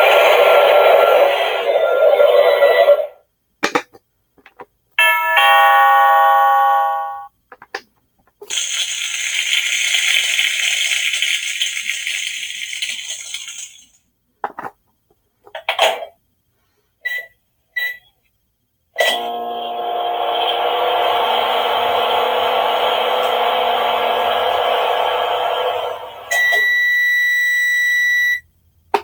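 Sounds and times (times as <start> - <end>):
chime-like tone: 5.0 - 7.3
loud hiss: 8.5 - 14.0, 20.7 - 26.4.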